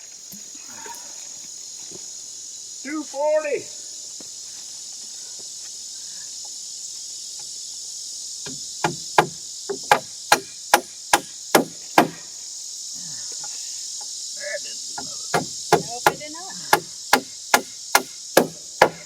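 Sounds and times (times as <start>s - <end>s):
insects droning: 0.0s - 19.0s
hammer striking wood: 8.5s - 12.2s, 15.0s - 19.0s.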